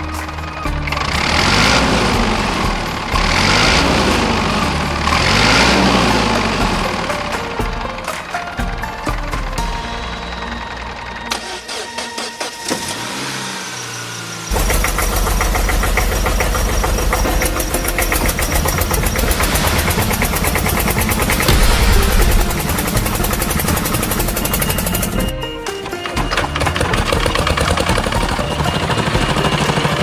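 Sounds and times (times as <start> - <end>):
engine running with deep rumble: 0.0 - 8.1, 12.8 - 25.3
light rhythmic clicks: 0.0 - 12.4, 14.5 - 30.0.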